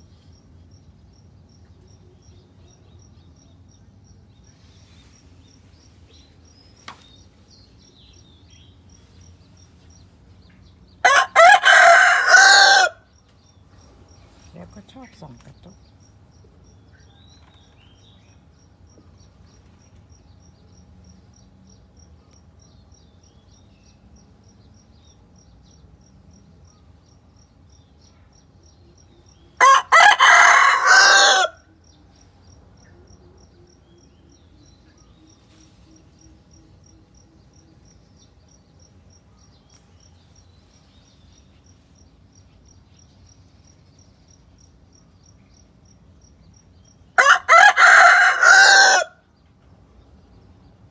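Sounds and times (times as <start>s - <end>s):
chicken crowing: 11.0s - 13.0s, 29.6s - 31.6s, 47.2s - 49.2s.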